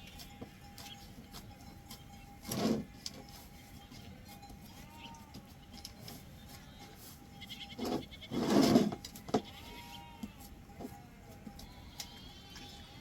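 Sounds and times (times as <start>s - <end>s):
goat bleating: 4.7s - 5.6s, 6.6s - 8.6s, 9.2s - 13.0s.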